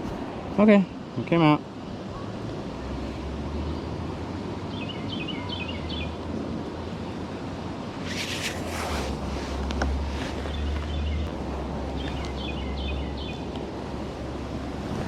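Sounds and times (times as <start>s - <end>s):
water noise: 0.0s - 15.0s
wind: 0.0s - 15.0s
bird chirping: 4.7s - 6.2s, 10.4s - 11.3s, 12.0s - 13.4s
wind rumble on microphone: 5.8s - 15.0s.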